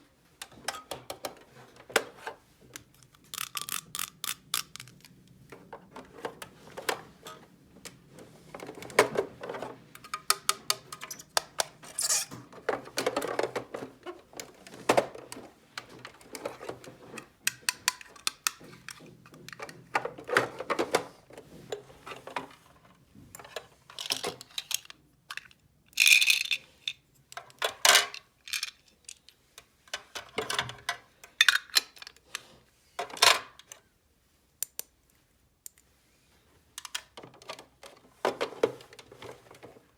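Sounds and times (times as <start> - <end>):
plastic toy pieces clicking: 2.8 - 5.1, 17.5 - 18.6, 24.0 - 26.6, 28.5 - 29.2.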